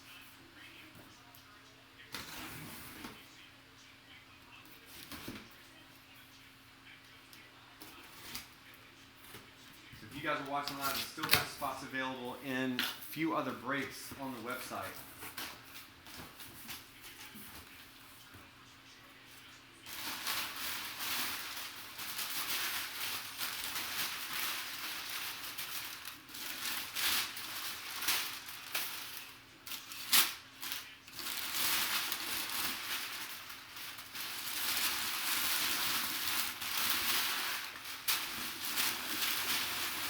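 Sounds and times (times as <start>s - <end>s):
cardboard crinkling and rustling: 19.9s - 40.0s.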